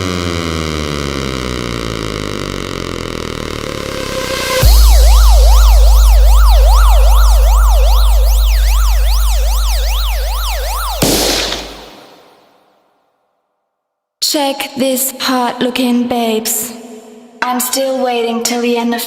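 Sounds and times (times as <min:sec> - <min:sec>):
sub-bass drone: 0:00.0 - 0:11.9
police siren yelp: 0:03.8 - 0:12.2.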